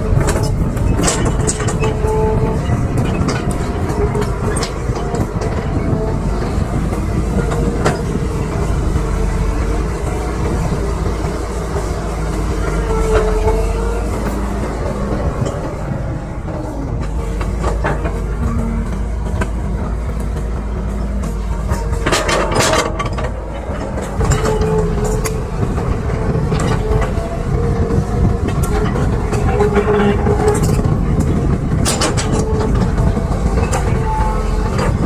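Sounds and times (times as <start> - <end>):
excavator diesel engine running: 0.0 - 35.0
metal clanks and scrapes: 0.1 - 6.6, 16.4 - 27.4, 28.4 - 35.0.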